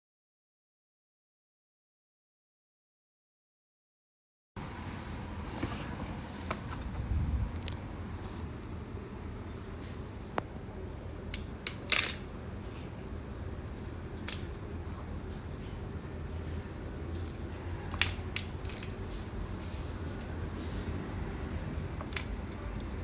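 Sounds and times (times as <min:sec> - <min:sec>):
small objects clicking: 0:11.3 - 0:12.3, 0:13.6 - 0:14.6.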